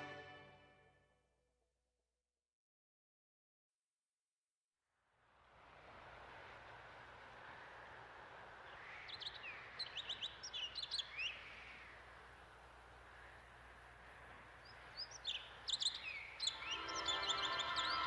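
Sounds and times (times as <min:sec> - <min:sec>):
music: 0:00.0 - 0:01.2, 0:16.7 - 0:18.0
faint steady hiss: 0:05.0 - 0:18.0
songbirds chirping: 0:05.6 - 0:18.0.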